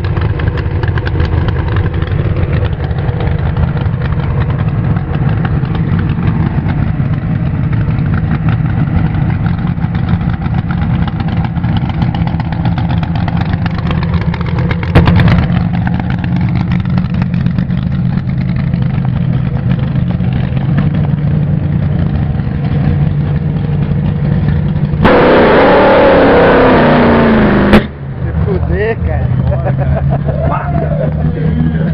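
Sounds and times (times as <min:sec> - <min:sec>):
race car engine idling: 0:00.0 - 0:31.9
sharp bang: 0:25.0 - 0:28.1.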